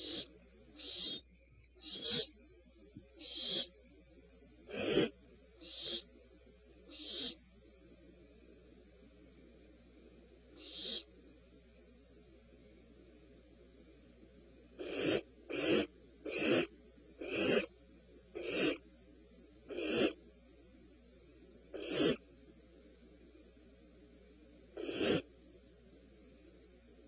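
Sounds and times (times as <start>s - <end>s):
bird raspy calls: 0.0s - 2.4s, 3.1s - 3.8s, 4.7s - 6.1s, 6.9s - 7.4s, 10.6s - 11.1s, 14.8s - 17.7s, 18.4s - 18.8s, 19.7s - 20.2s, 21.8s - 22.2s, 24.8s - 25.2s.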